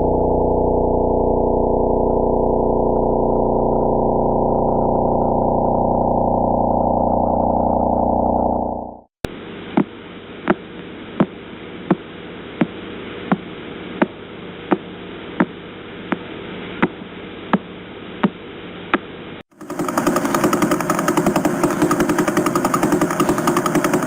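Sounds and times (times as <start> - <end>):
low droning tone: 0.0 - 9.1
sharp regular clicks: 19.5 - 24.0.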